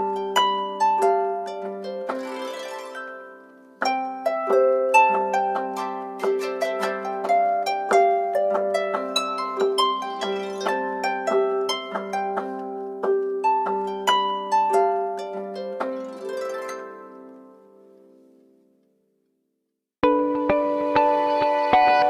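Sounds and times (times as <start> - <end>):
plucked harp-like ringtone melody: 0.0 - 17.8.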